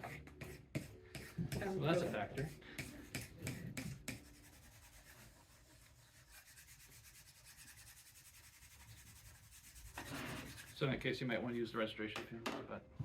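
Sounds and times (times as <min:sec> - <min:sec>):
paper rubbing on wooden block: 0:00.0 - 0:10.8.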